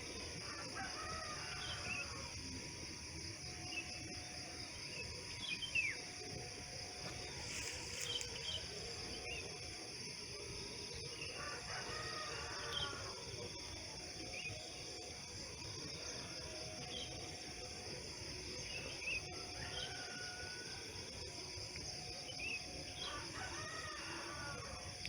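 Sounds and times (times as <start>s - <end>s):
insects droning: 0.0s - 25.0s
rooster crowing: 0.4s - 2.2s, 11.4s - 13.2s, 23.0s - 24.8s.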